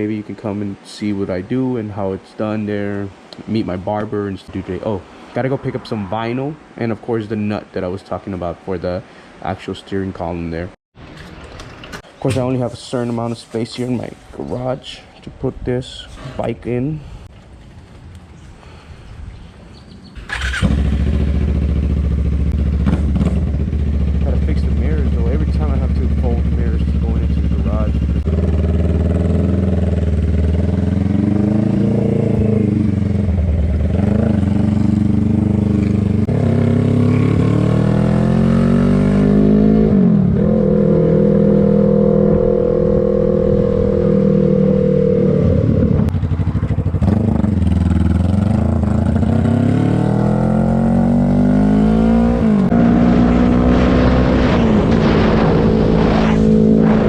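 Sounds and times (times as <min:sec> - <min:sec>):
motorcycle engine shifting gears: 0:20.2 - 0:57.0.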